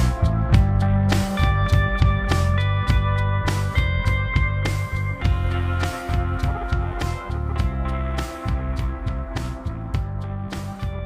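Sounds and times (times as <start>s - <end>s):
bass line: 0.0s - 11.0s
guitar music over beat: 0.0s - 11.0s.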